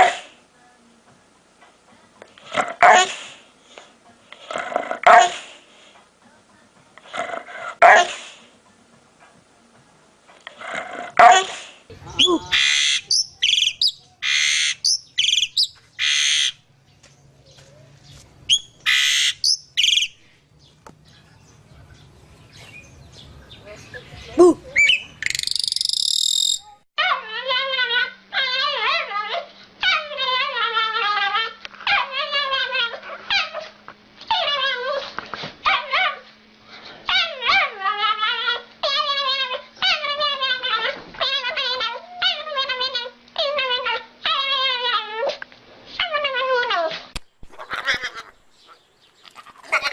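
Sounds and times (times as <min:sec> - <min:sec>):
bird screeching: 0:12.0 - 0:16.6, 0:18.5 - 0:20.1, 0:24.8 - 0:26.7, 0:47.5 - 0:49.9.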